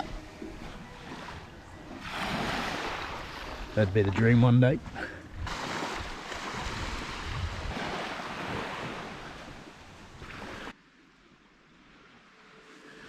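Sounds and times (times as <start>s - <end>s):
waves on shore: 0.0s - 13.0s
wind buffeting microphone: 4.8s - 10.3s.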